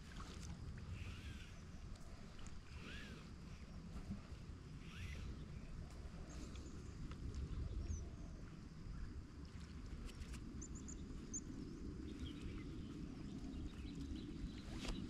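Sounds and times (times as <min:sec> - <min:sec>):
wind rumble on microphone: 0:00.0 - 0:15.0
faint high bird chirps: 0:04.8 - 0:05.8.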